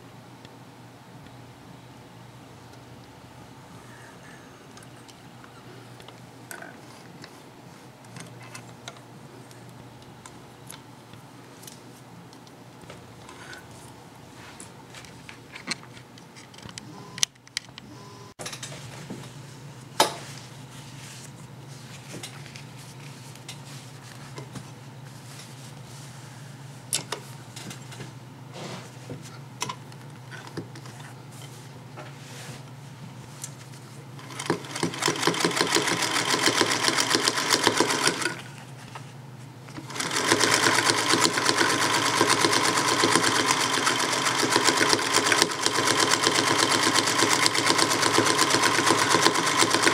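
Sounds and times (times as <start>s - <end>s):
sewing machine stitching rattle: 34.2s - 38.4s, 39.8s - 49.9s
sewing machine hum and clicks: 34.2s - 38.5s, 39.7s - 49.9s.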